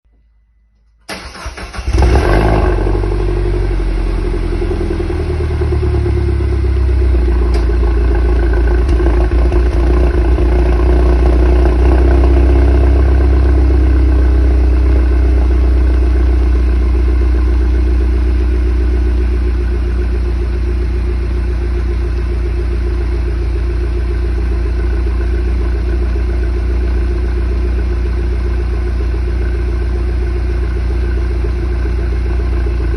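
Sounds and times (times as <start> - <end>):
engine starter cranking: 1.0 - 2.2
car engine idling: 1.0 - 32.9.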